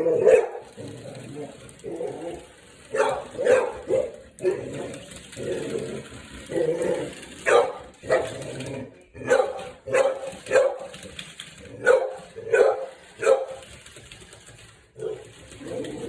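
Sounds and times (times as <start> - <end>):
dog barking: 0.0 - 0.7, 2.9 - 4.7, 7.4 - 8.4, 9.2 - 11.0, 11.8 - 13.6.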